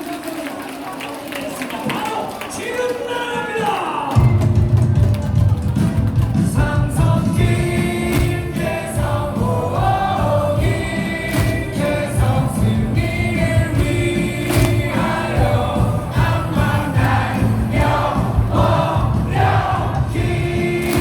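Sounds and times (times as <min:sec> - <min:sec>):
music over loudspeakers: 0:03.8 - 0:21.0
crowd singing a cheer song: 0:06.4 - 0:21.0.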